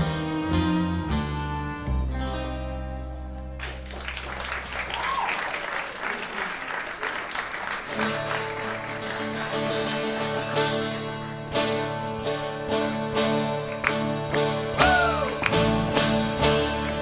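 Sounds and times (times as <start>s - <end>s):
plucked lute and bass playing: 0.0s - 4.0s, 7.9s - 17.0s
audience applauding: 3.6s - 11.5s, 13.7s - 17.0s.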